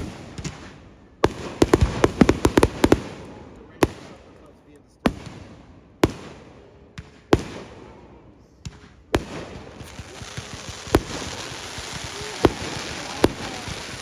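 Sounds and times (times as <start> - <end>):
fireworks bangs: 0.0 - 14.0
fireworks hissing crackle: 9.2 - 14.0.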